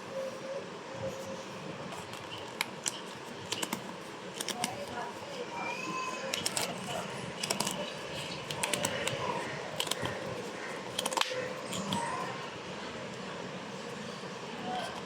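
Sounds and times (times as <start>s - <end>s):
snack packaging crinkling: 6.4s - 9.2s.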